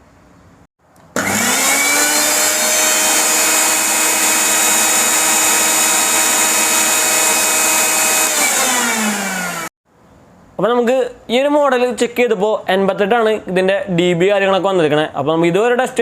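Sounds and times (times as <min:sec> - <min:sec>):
mixer grinder motor whining: 0:01.2 - 0:09.7.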